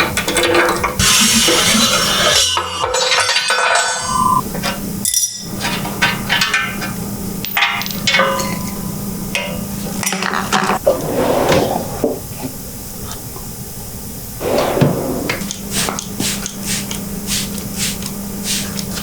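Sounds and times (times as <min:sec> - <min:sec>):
steady low hum: 0:12.5 - 0:18.4.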